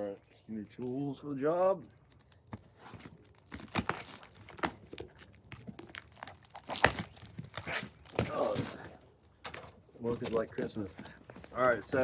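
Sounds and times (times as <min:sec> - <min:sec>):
packaging crinkling and tearing: 0:01.5 - 0:08.8.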